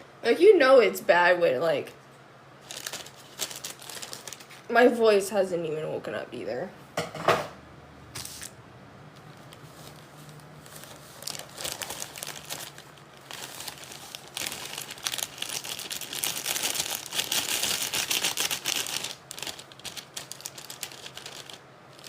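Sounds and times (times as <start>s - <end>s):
packaging crinkling and tearing: 2.6s - 4.7s, 9.3s - 22.0s.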